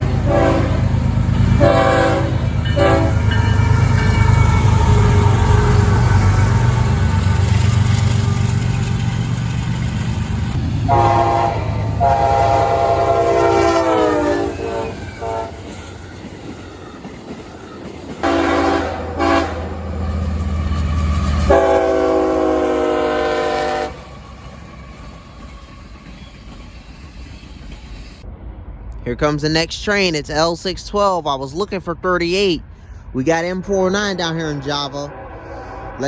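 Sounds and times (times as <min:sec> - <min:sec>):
locomotive chime horn blasts: 0:00.0 - 0:01.0, 0:01.6 - 0:06.1, 0:10.9 - 0:15.7, 0:18.2 - 0:19.9, 0:21.5 - 0:24.1
locomotive low rumble: 0:00.0 - 0:36.0.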